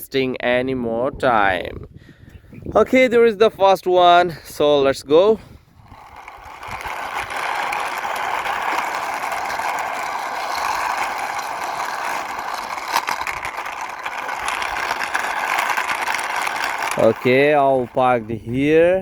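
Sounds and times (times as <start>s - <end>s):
toy car wheels whirring: 5.1s - 19.0s
toy car clicks: 5.9s - 18.4s.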